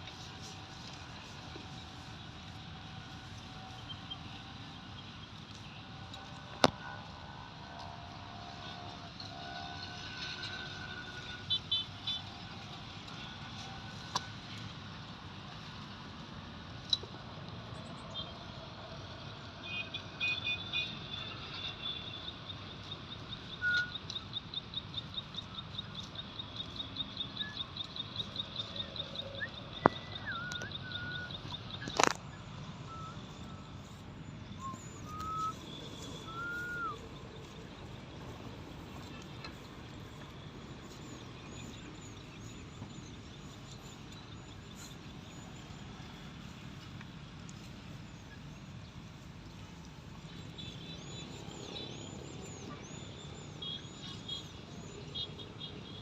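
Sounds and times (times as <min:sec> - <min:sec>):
short whistled bird calls: 0:23.6 - 0:24.2, 0:29.3 - 0:32.0, 0:32.9 - 0:33.8, 0:34.5 - 0:37.6
bird pulsing high trill: 0:32.8 - 0:37.6
faint high chirps: 0:32.8 - 0:37.6.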